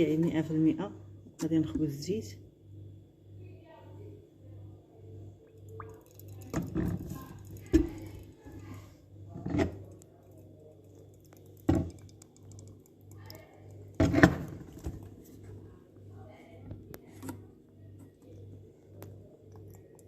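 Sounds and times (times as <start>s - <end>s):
faint pulsing hum: 0.0s - 20.0s
oil pouring into jar: 5.5s - 8.3s, 9.5s - 14.9s.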